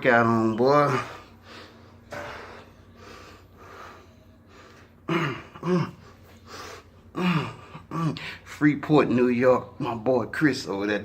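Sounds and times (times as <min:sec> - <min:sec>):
man breathing hard: 0:00.8 - 0:05.1, 0:05.9 - 0:08.5.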